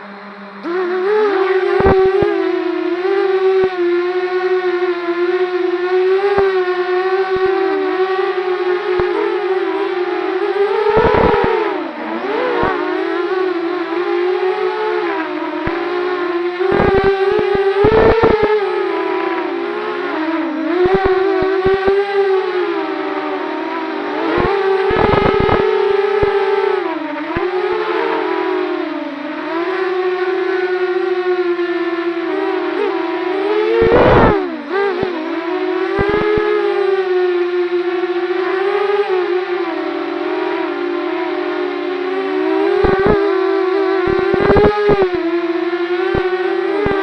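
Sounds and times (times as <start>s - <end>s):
wavering pitched whine: 0.0s - 47.0s
crackling clicks: 11.0s - 11.5s, 16.6s - 18.6s, 20.8s - 22.0s, 24.3s - 26.4s, 33.8s - 34.4s, 36.0s - 36.5s, 42.8s - 43.3s, 44.1s - 45.2s.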